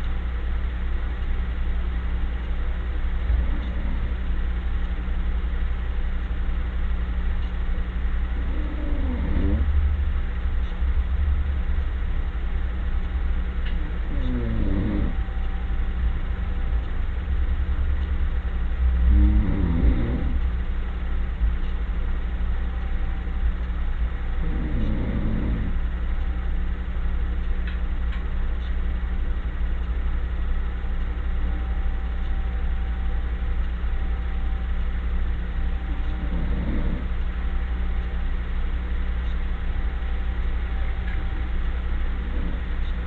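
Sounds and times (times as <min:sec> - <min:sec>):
steady low rumble: 0:00.0 - 0:43.0
person snoring: 0:03.3 - 0:04.2, 0:08.4 - 0:09.7, 0:13.8 - 0:15.2, 0:19.0 - 0:20.4, 0:24.4 - 0:25.8, 0:36.2 - 0:37.1, 0:42.2 - 0:42.8.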